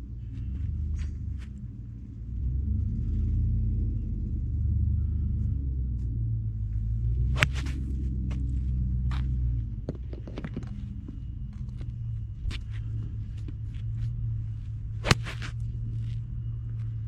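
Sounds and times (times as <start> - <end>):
low steady rumble: 0.0 - 17.0
golf clubs striking balls: 7.3 - 8.5, 9.9 - 16.3.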